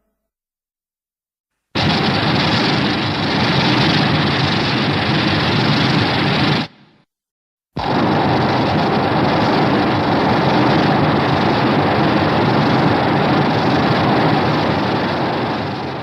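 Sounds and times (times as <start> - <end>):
monster rumbling rush: 7.8 - 16.0.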